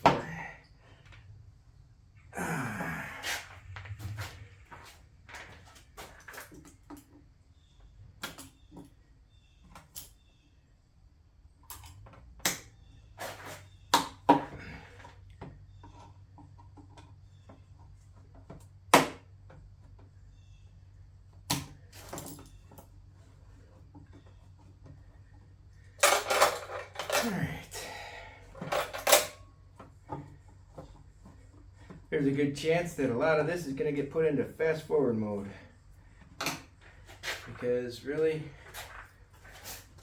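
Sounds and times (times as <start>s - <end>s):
metal tools clinking and knocking: 26.0s - 27.6s, 28.6s - 29.5s.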